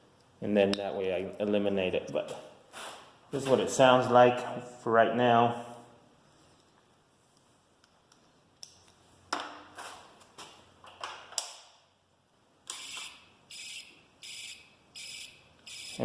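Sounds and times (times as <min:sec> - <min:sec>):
high-pitched turn signal beeping: 0:12.7 - 0:16.0.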